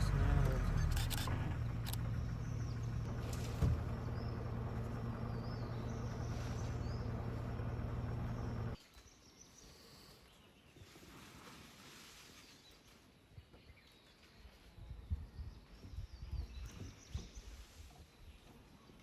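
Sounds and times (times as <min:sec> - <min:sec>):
vehicle engine idling: 0:00.0 - 0:08.8
birds chirping: 0:00.0 - 0:10.6.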